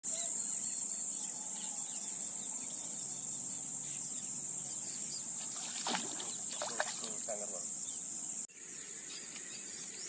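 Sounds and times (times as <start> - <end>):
insects trilling: 0.1 - 10.0.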